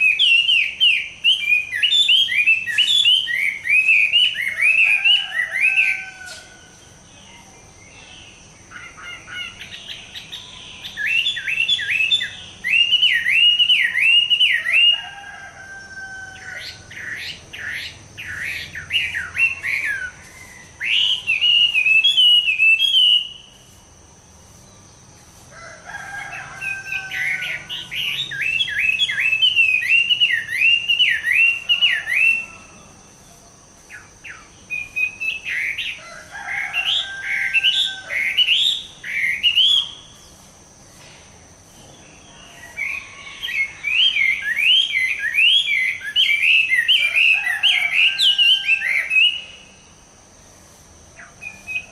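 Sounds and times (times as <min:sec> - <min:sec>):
bird singing whistled phrases: 0:00.0 - 0:06.5, 0:08.8 - 0:15.0, 0:20.8 - 0:23.6, 0:26.6 - 0:32.5, 0:37.2 - 0:40.1, 0:42.9 - 0:49.6.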